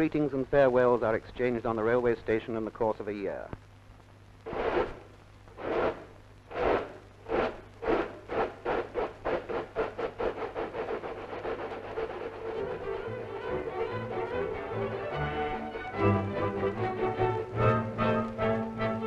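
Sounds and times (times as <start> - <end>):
steam locomotive chuffing: 5.6 - 13.1.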